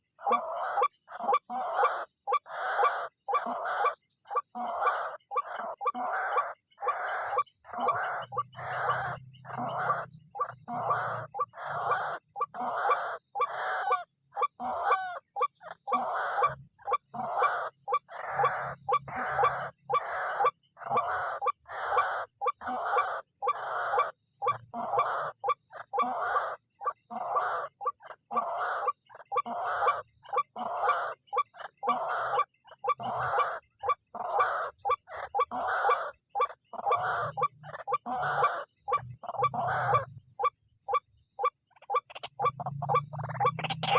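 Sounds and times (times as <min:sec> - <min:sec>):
waterhen harsh croaking call: 0:00.0 - 0:43.9.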